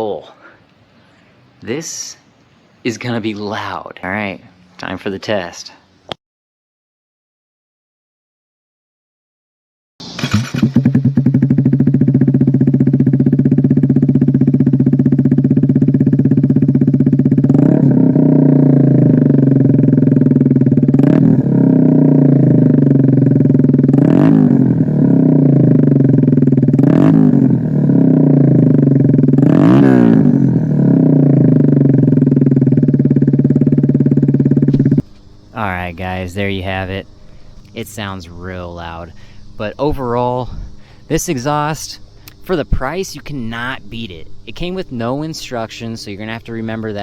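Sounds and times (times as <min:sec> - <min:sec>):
motorcycle engine idling loudly: 0:10.0 - 0:47.0
motorcycle throttle revs: 0:10.0 - 0:47.0.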